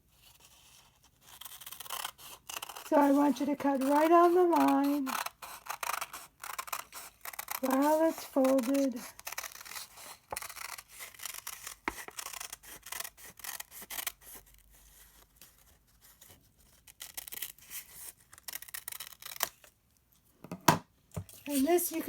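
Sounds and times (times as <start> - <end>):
scissors snipping paper: 1.2 - 14.5
paper rustling: 2.6 - 5.1.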